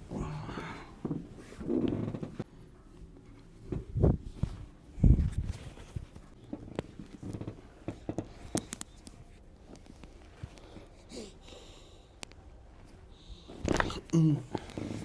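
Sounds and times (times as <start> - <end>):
quiet clicks and taps: 6.0 - 11.0.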